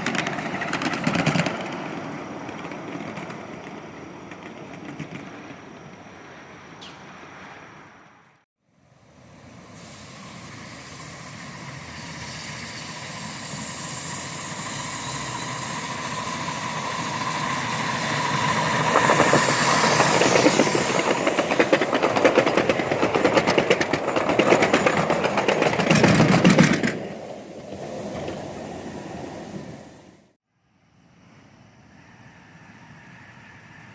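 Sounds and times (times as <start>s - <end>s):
miniature train wheels clattering on rail: 0.0s - 6.0s, 10.8s - 28.4s.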